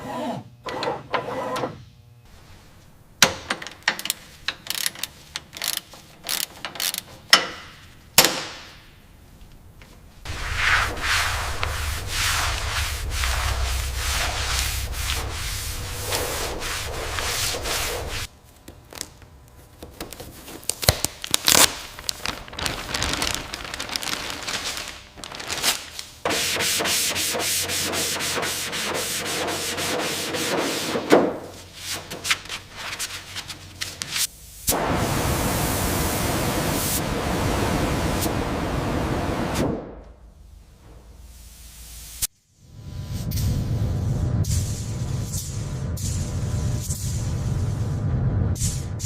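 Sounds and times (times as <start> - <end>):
sanding strokes on car body: 10.3 - 18.3, 26.3 - 31.0.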